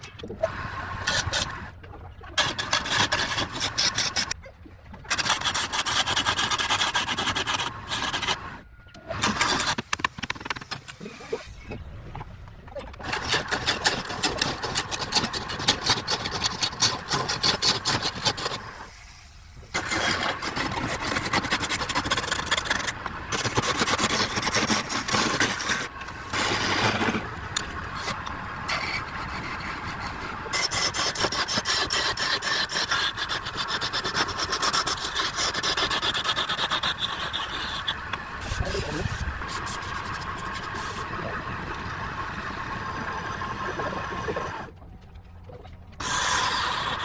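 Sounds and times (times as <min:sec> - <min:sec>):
wood lathe tool rasping: 0:01.0 - 0:01.6, 0:02.4 - 0:04.4, 0:05.1 - 0:08.6, 0:09.2 - 0:10.7, 0:13.0 - 0:19.1, 0:19.8 - 0:41.1, 0:46.0 - 0:47.0.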